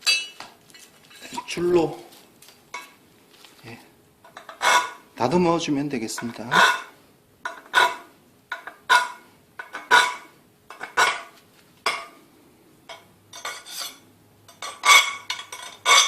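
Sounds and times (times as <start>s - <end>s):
hand file scraping metal tube: 4.4s - 5.0s, 6.4s - 6.9s, 7.6s - 8.0s, 13.5s - 14.0s.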